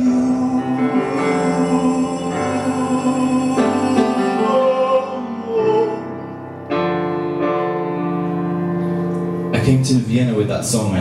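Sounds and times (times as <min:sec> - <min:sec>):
piano chords: 0:00.0 - 0:11.0.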